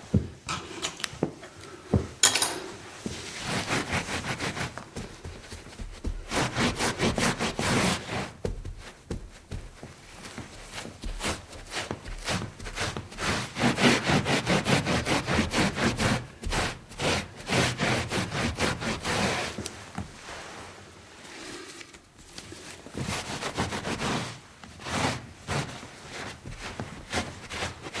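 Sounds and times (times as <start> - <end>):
scrubbing by hand: 3.1 - 19.6.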